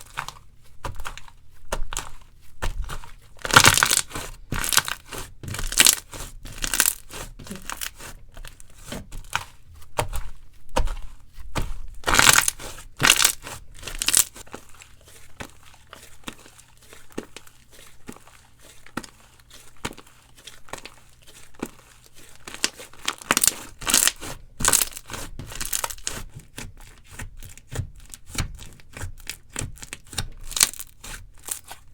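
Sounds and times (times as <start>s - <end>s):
slime squeezed by hand: 3.4s - 8.0s, 12.1s - 14.4s.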